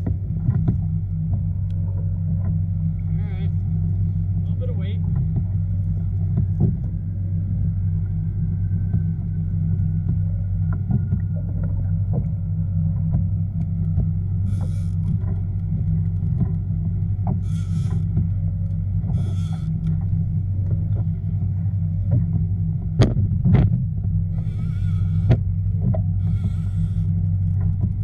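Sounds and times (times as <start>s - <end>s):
low motor drone: 0.0s - 28.0s
faint high whine: 17.4s - 20.2s, 24.3s - 27.8s.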